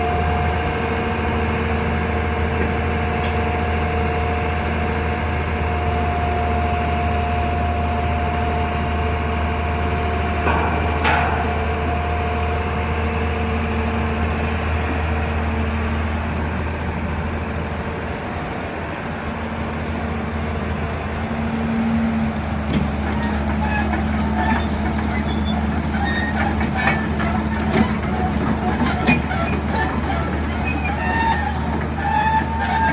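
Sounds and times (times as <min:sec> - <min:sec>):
excavator diesel engine: 0:00.0 - 0:32.9
short knocks: 0:10.4 - 0:12.8.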